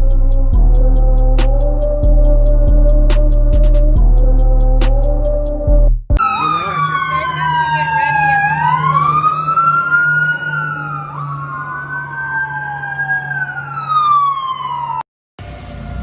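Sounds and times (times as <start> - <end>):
warning sirens wailing: 0.1 - 16.0.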